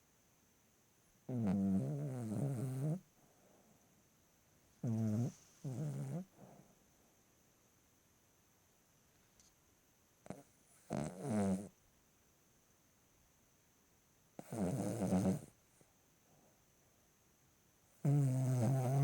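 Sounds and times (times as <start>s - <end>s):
dog snoring: 1.3s - 3.1s, 4.8s - 6.6s, 10.2s - 11.8s, 14.4s - 15.6s, 18.0s - 19.0s.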